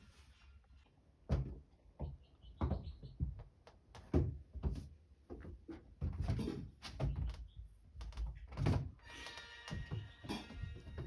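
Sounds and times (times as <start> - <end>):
music: 9.0 - 11.0.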